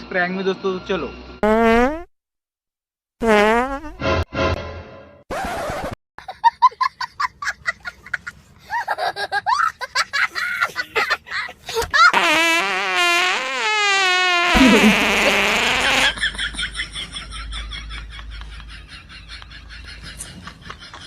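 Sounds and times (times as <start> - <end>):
fart sound effects: 1.4 - 2.1, 3.2 - 4.3, 5.3 - 6.0, 12.1 - 16.2.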